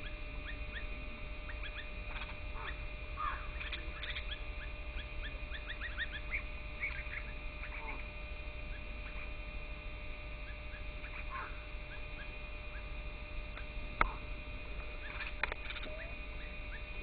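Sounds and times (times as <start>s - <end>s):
small birds chirping: 0.0s - 9.5s, 10.2s - 17.0s
steady high hum: 0.0s - 17.0s.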